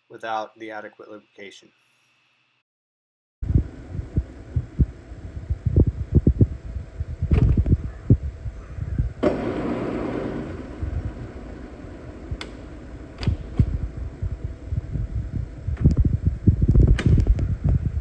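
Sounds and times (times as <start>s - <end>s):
milling machine humming: 9.1s - 15.8s.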